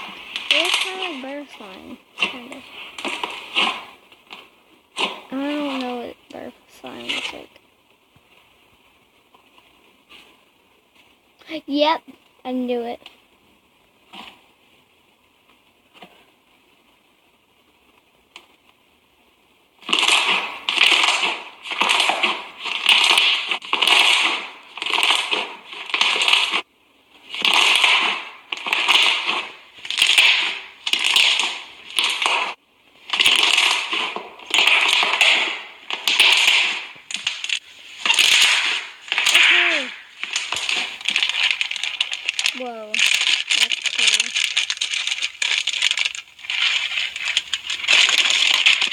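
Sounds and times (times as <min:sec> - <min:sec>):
slime squishing: 0:00.0 - 0:04.0, 0:27.3 - 0:48.9.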